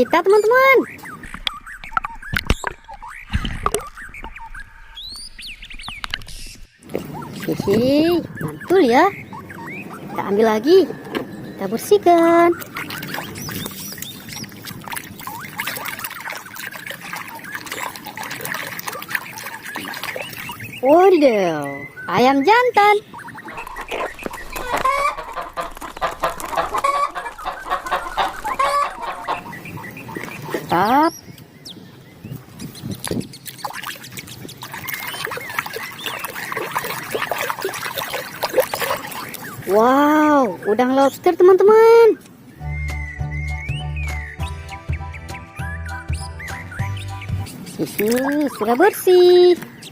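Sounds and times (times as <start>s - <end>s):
water splashing and trickling: 0.0s - 42.6s, 46.1s - 49.9s
water dripping and bubbling: 0.6s - 8.8s, 12.5s - 20.9s, 23.1s - 30.8s, 32.9s - 40.4s.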